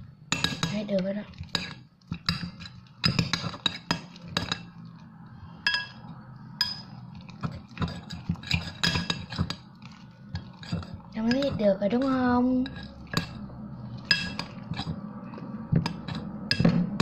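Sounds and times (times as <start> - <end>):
utensil clinking against bowl: 5.6 - 6.0, 6.6 - 13.4, 14.0 - 16.8.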